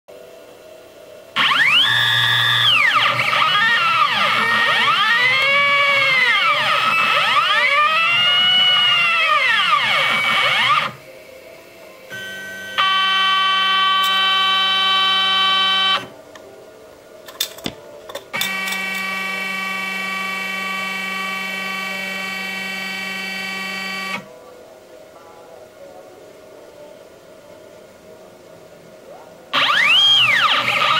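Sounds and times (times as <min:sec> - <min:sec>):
stepper motors whining: 0:01.4 - 0:11.0, 0:12.1 - 0:16.1, 0:18.4 - 0:24.3, 0:29.6 - 0:30.9.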